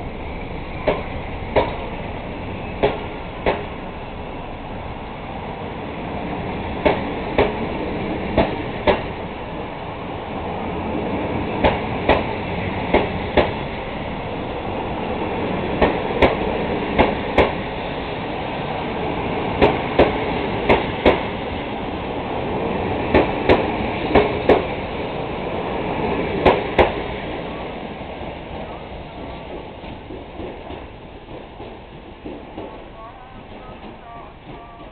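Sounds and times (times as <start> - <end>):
train rolling rumble: 0.0 - 34.9
wheels clacking over rail joints: 0.8 - 2.0, 2.8 - 3.8.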